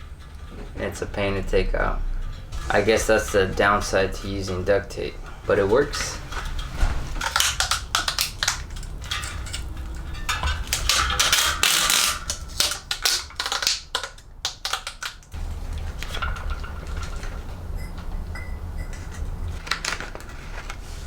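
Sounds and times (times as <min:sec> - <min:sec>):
tape peeling and ripping: 0:10.7 - 0:15.3
rasping tape tear: 0:10.8 - 0:15.0.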